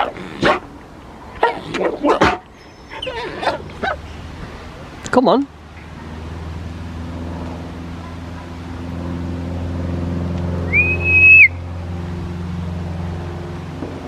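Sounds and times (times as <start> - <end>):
low engine hum: 0.0 - 14.0
high whistled note: 10.7 - 11.6.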